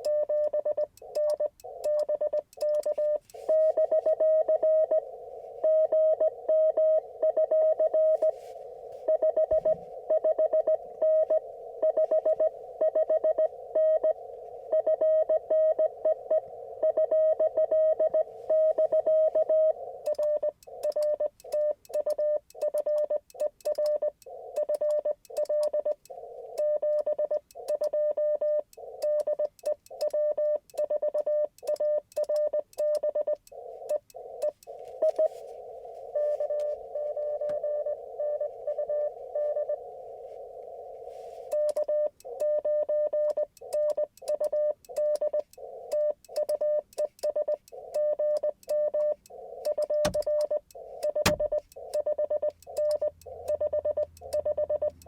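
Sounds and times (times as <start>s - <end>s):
morse code tone: 0.0s - 55.0s
radio receiver hiss: 4.8s - 5.6s, 8.1s - 10.1s, 10.7s - 14.7s, 15.8s - 16.8s, 33.5s - 41.5s.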